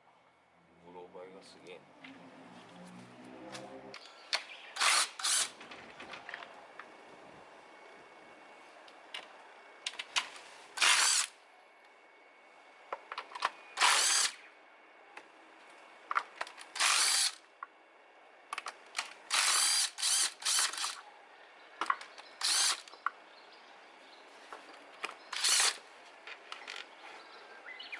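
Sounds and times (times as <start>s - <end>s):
ratchet wrench ratcheting: 10.8s - 11.3s, 16.8s - 17.4s, 19.3s - 21.0s, 22.4s - 22.9s, 25.3s - 25.8s.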